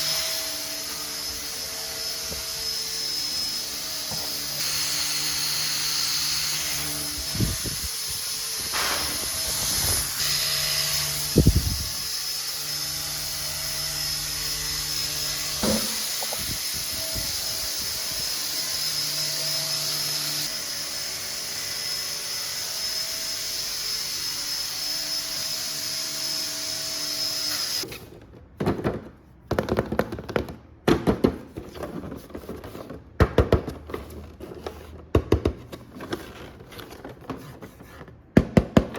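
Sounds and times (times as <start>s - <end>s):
toy car electric motor whining: 0.0s - 21.2s
knocks: 15.6s - 16.4s.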